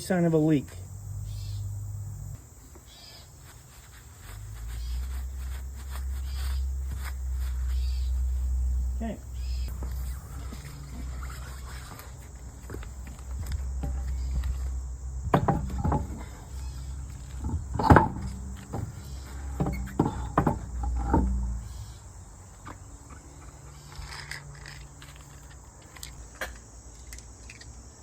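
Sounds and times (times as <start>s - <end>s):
crickets chirping: 0.0s - 28.0s
knocks and clunks: 4.9s - 22.8s.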